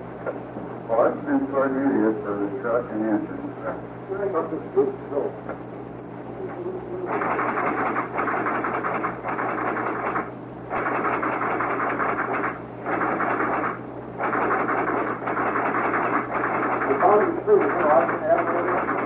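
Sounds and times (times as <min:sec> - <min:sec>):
low electrical hum: 0:00.0 - 0:19.0
telegraph equipment clattering: 0:06.4 - 0:19.0.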